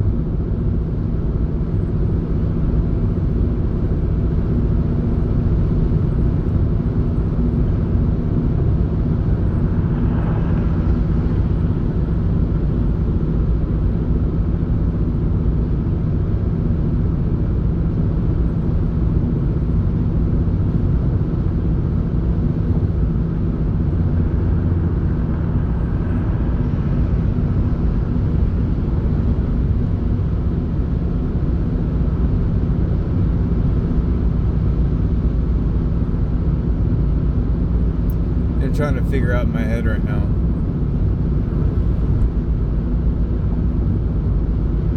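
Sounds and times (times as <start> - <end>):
road rumble: 0.1 - 15.9, 16.9 - 44.9
car engine drone: 1.6 - 14.3, 18.5 - 44.9.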